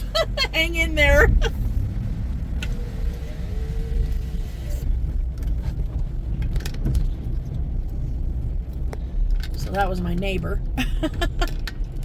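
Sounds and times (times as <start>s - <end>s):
car engine and tyres rumble: 0.0s - 12.0s
faint whine: 0.7s - 6.0s.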